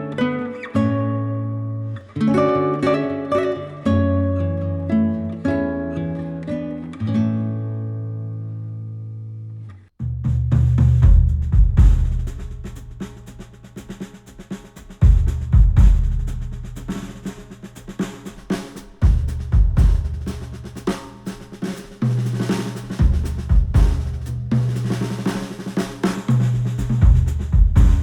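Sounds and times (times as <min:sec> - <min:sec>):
drum kit playing: 0:10.2 - 0:28.0.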